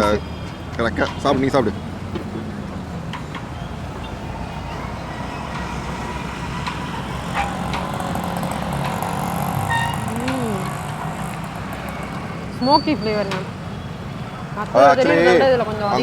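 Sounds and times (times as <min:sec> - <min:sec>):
roadside traffic noise: 0:00.0 - 0:16.0
faint clicks: 0:04.8 - 0:12.6.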